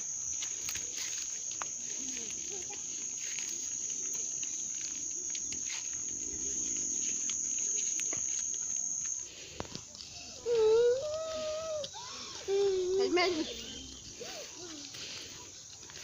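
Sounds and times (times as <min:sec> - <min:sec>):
insect buzzing high-pitched: 0:00.1 - 0:09.4.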